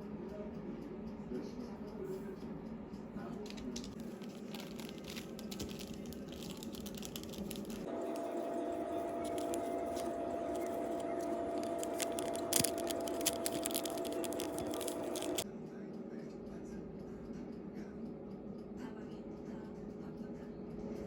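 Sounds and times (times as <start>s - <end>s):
crinkling clicking handling noises: 3.5s - 15.4s
steady hum: 3.5s - 15.4s.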